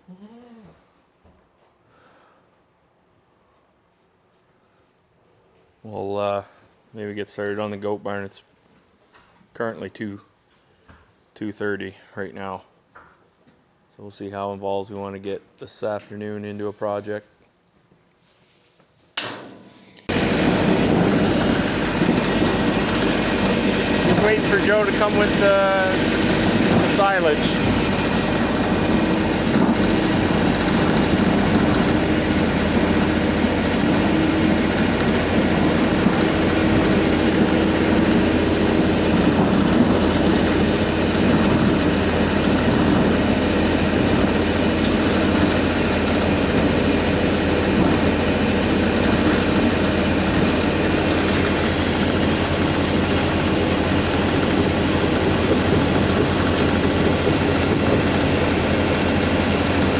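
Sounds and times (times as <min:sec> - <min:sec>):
engine humming steadily: 0:19.2 - 0:59.9.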